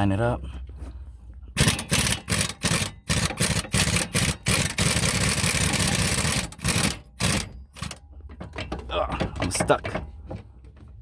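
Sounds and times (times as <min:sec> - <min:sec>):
impact wrench hammering: 0:01.6 - 0:10.0.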